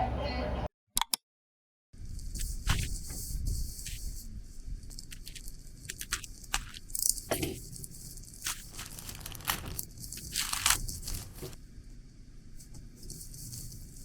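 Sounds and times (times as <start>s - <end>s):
packaging crinkling and tearing: 4.9s - 7.3s, 8.2s - 11.6s.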